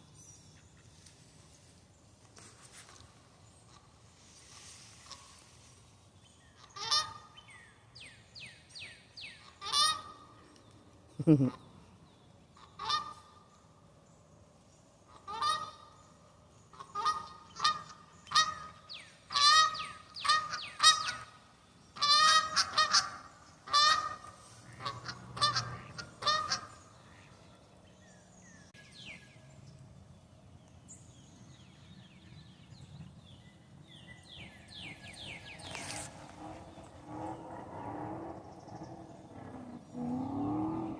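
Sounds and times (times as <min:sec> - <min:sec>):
waterfowl calling: 0:06.6 - 0:07.3, 0:09.4 - 0:10.3, 0:12.6 - 0:13.4, 0:15.1 - 0:16.0, 0:16.7 - 0:21.4, 0:22.0 - 0:27.4.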